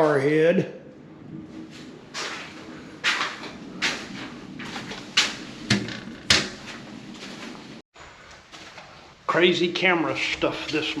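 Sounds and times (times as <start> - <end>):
sharp knocks and thumps: 3.1 - 6.8.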